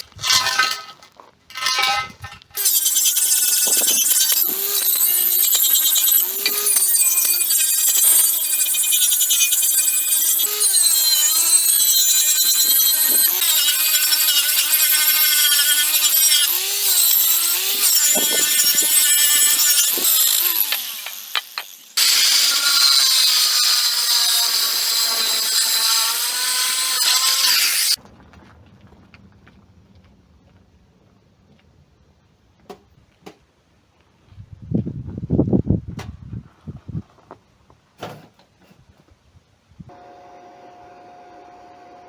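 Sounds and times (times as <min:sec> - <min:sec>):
angle grinder cutting steel: 0:01.6 - 0:28.0.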